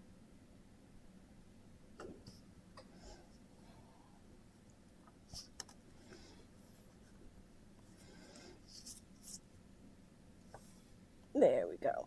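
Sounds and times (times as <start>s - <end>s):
faint scratching of drawing strokes: 5.2s - 9.6s, 10.4s - 11.1s.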